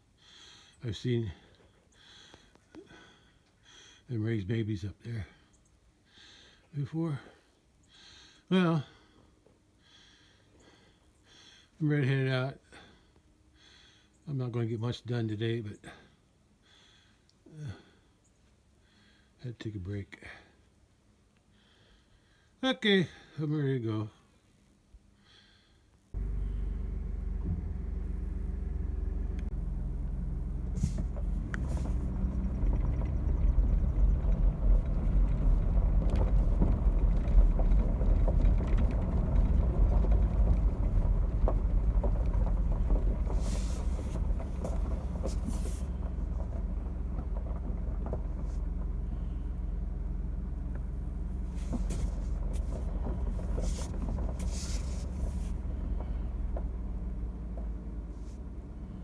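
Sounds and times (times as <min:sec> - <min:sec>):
truck engine running: 0:26.2 - 0:59.0
knocks and rattles: 0:30.7 - 0:48.9, 0:51.4 - 0:56.7.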